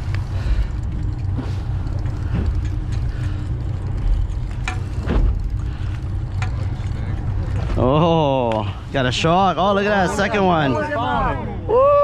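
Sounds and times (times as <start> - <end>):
boat engine rumbling: 0.0 - 12.0.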